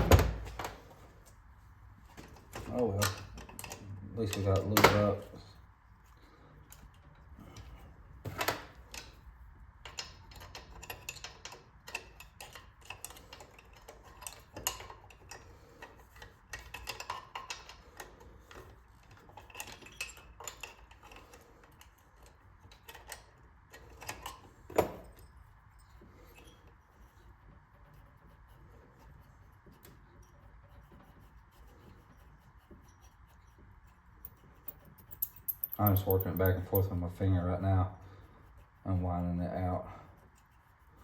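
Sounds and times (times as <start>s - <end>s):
metal tool clicks and clinks: 34.2s - 37.0s.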